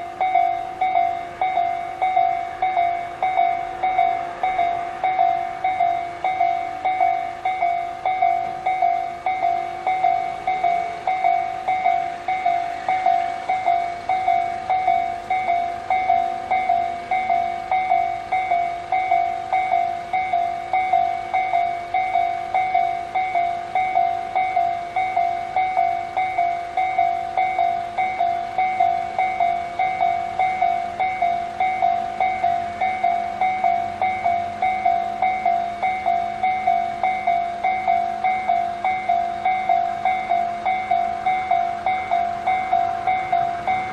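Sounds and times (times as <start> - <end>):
level crossing bell alarm: 0.0 - 43.9.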